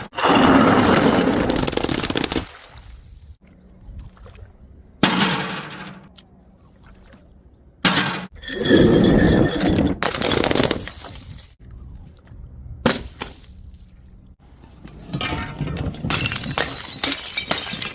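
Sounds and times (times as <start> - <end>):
glass bottles smashing: 8.5 - 11.6, 15.2 - 17.9
glass shards clinking: 15.3 - 17.9.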